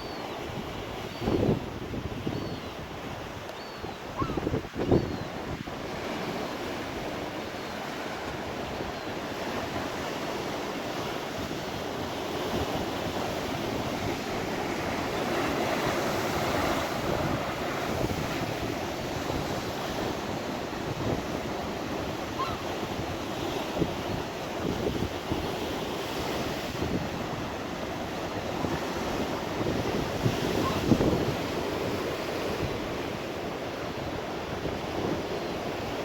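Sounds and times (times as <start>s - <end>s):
wind buffeting microphone: 0.5s - 36.0s
sea surf breaking: 5.5s - 22.6s.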